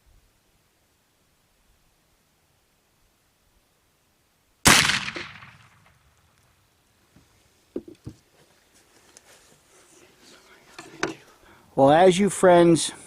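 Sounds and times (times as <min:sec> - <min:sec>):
rifle shot with echo: 0:04.6 - 0:06.2
small knocks: 0:07.7 - 0:08.2.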